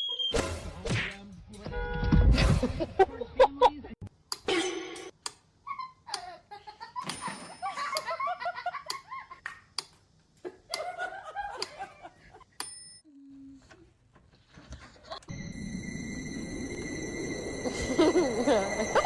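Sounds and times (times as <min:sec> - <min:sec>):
person laughing: 0:17.6 - 0:19.0.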